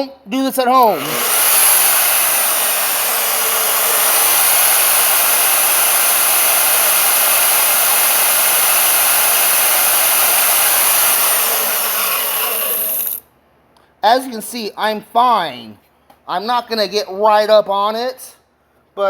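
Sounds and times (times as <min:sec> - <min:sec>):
bandsaw motor whine: 0:00.8 - 0:13.2.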